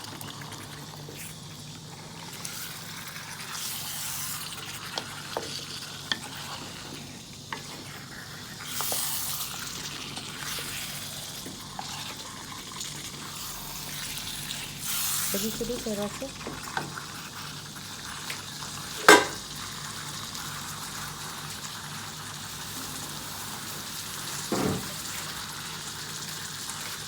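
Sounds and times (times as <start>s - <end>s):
food sizzling in a pot: 0.0s - 27.0s
spoon clinking against pot: 19.0s - 19.4s.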